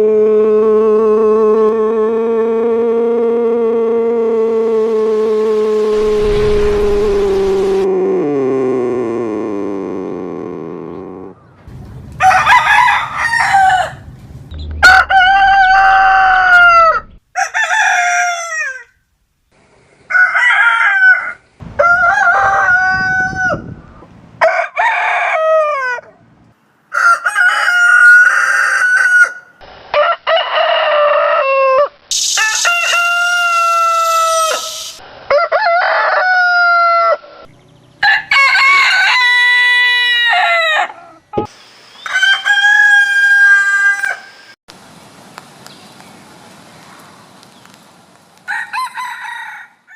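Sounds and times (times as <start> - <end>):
roosters crowing: 11.0 - 19.0, 20.1 - 26.2, 26.9 - 41.3, 42.0 - 44.6, 48.5 - 49.9.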